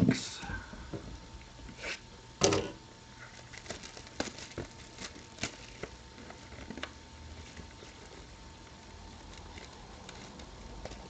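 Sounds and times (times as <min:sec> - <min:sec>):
wrapping crinkling: 0:03.1 - 0:11.0
card box wrapping rustling: 0:03.2 - 0:11.0.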